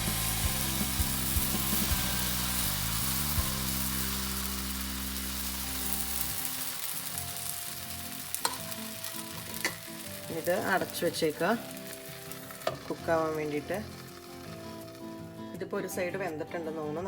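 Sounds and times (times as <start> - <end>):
pancake batter sizzling in a pan: 0.0 - 15.6.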